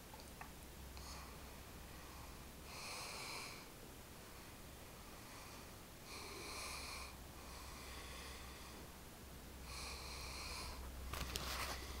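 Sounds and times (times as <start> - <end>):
person snoring: 5.4 - 8.8, 9.6 - 10.8
scuffling noise with clicks: 11.1 - 11.8.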